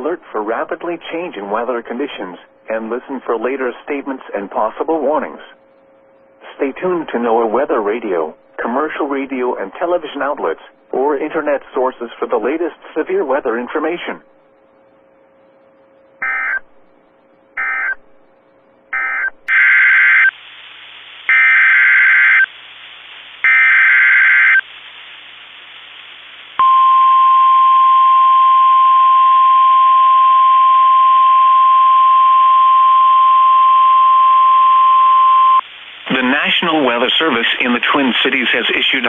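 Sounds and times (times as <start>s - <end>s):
steady alarm tone: 16.2s - 16.7s, 17.6s - 18.0s, 18.9s - 20.4s, 21.3s - 22.5s, 23.4s - 24.6s.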